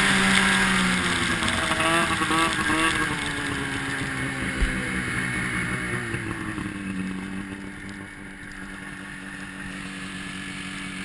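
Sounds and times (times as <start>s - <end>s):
snowmobile engine idling: 0.0s - 11.0s.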